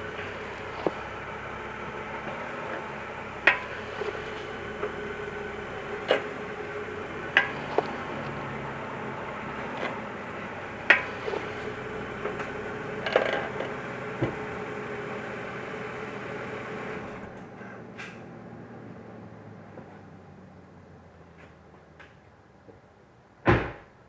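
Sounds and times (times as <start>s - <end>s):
car brakes clicking: 0.0s - 18.4s
steady vehicle hum: 0.0s - 23.7s.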